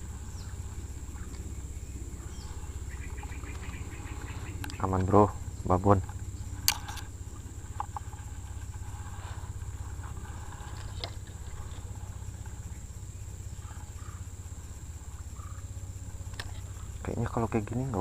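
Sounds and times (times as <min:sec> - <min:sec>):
insects droning: 0:00.0 - 0:18.0
low steady hum: 0:00.0 - 0:18.0
faint clicks: 0:03.2 - 0:05.2.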